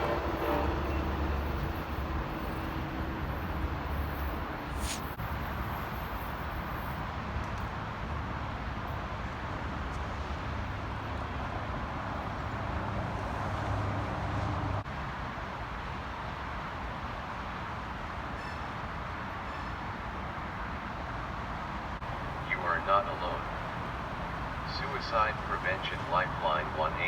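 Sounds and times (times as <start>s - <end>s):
train rumbling: 0.0s - 6.8s.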